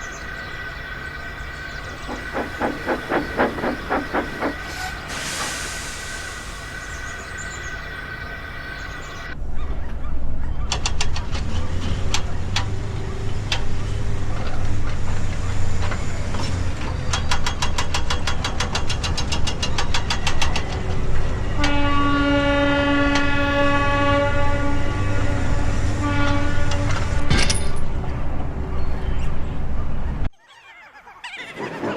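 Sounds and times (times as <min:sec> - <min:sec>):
wheels clacking over rail joints: 0:00.0 - 0:05.6, 0:10.6 - 0:23.7, 0:26.0 - 0:30.1
train low rumble: 0:00.0 - 0:30.3
train horn blast: 0:21.3 - 0:27.9.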